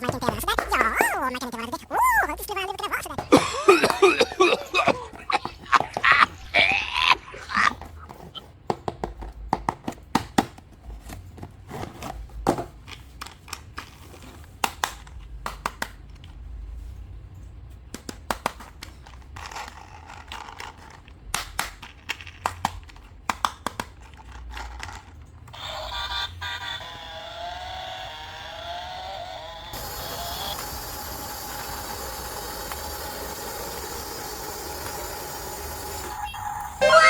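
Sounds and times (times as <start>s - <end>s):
toys and packaging clicking: 0.0s - 37.0s
packaging scraping: 18.9s - 21.2s.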